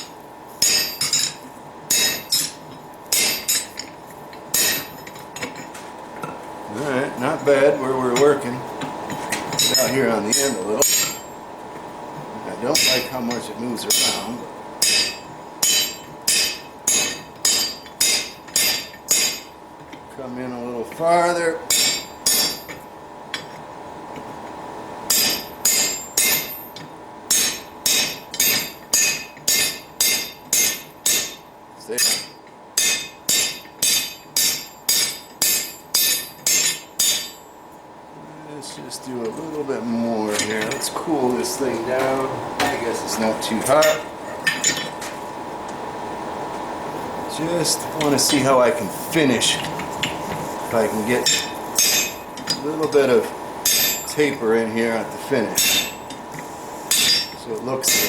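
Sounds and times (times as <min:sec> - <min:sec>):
hammer striking metal with ring: 0:00.6 - 0:03.7, 0:04.5 - 0:04.9, 0:09.6 - 0:11.3, 0:12.8 - 0:19.5, 0:21.7 - 0:22.8, 0:25.1 - 0:26.6, 0:27.3 - 0:31.4, 0:32.0 - 0:37.4, 0:51.2 - 0:52.6, 0:53.6 - 0:54.1, 0:55.6 - 0:56.0, 0:56.9 - 0:58.0.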